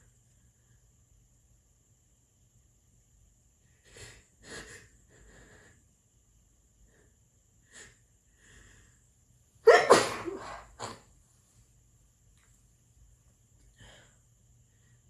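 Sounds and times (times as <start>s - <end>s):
person breathing quietly: 3.6s - 5.9s, 6.8s - 9.2s, 13.6s - 15.0s
person sneezing: 9.6s - 11.1s.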